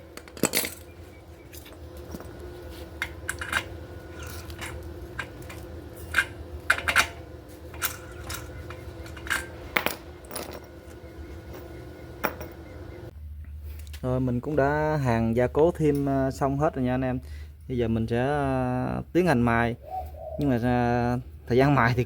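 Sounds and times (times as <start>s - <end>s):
low steady hum: 0.0s - 19.2s
metallic clinks on steel parts: 0.2s - 1.0s, 3.0s - 13.1s.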